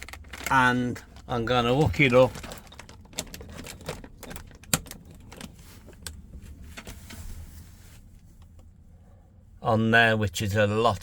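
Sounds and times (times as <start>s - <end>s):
plastic bag clicks and rustles: 0.0s - 6.1s.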